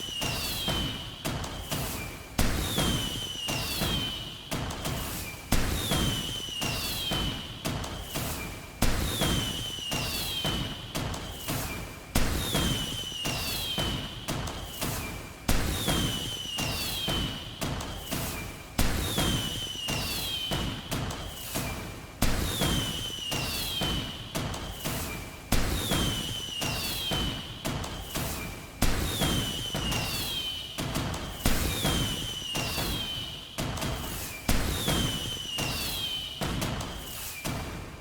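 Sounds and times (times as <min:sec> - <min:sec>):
falling whistle: 0:00.0 - 0:00.9, 0:12.5 - 0:14.0, 0:16.1 - 0:17.3, 0:26.0 - 0:27.3, 0:29.2 - 0:30.8, 0:31.6 - 0:36.4
fireworks bangs: 0:01.7 - 0:04.1, 0:08.0 - 0:10.7, 0:11.4 - 0:17.3, 0:22.2 - 0:37.8
fireworks crackling: 0:24.6 - 0:37.9.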